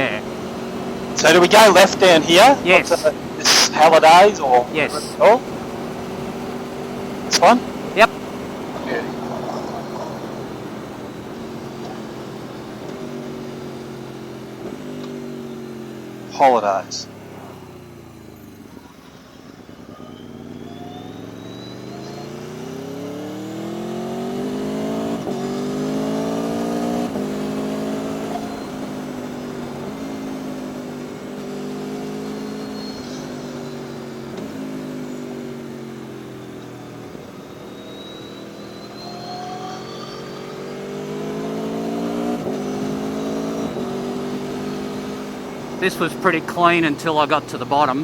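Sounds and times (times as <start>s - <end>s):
motorcycle engine revving: 0.0s - 48.0s.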